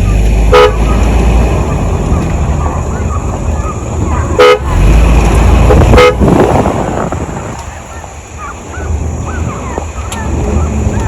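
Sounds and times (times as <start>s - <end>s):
distant hounds baying: 0.0s - 4.6s, 7.6s - 11.0s
vehicle rumble: 0.0s - 11.0s
horn toots: 0.5s - 1.1s, 4.4s - 5.0s, 5.7s - 6.7s.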